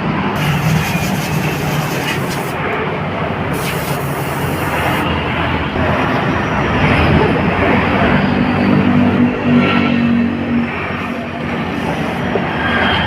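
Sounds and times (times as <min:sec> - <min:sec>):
loud rushing noise: 0:00.0 - 0:13.0.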